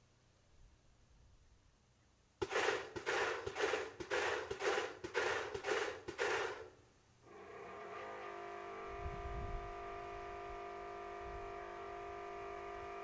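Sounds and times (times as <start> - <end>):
siren motor starting: 7.3 - 13.0.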